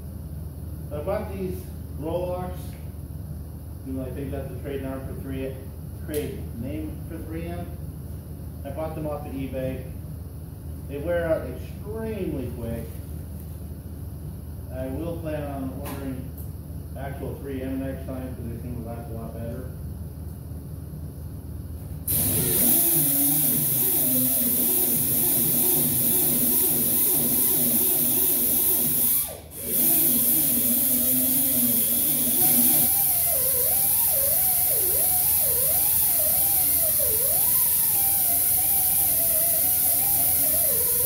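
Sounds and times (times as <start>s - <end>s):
die grinder on metal: 22.1s - 41.0s.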